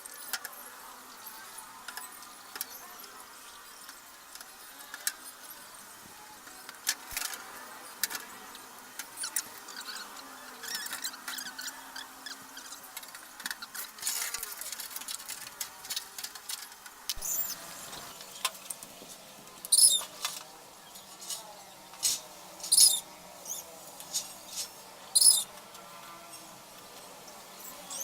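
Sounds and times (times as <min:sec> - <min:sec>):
parts clicking and scraping: 0:09.0 - 0:25.8
short high-pitched squeaks: 0:17.2 - 0:17.6, 0:19.7 - 0:20.1, 0:22.6 - 0:23.6, 0:25.2 - 0:25.4.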